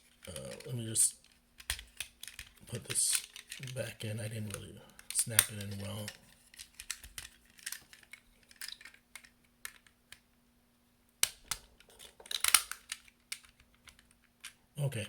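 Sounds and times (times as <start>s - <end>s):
plastic toy parts clicking: 1.2s - 3.8s, 4.5s - 10.2s, 11.2s - 14.6s.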